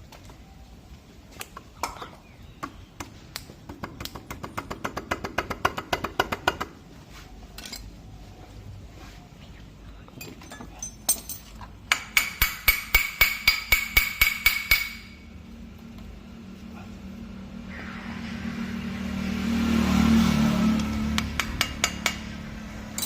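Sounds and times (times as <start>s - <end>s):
hammer tapping on metal: 11.9s - 15.2s, 21.2s - 22.3s.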